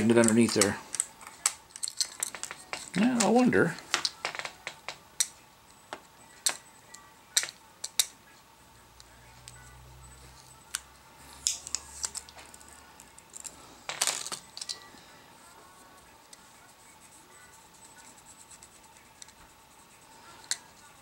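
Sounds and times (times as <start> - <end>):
metal tools clicking and tapping: 0.0 - 8.1, 11.4 - 14.9.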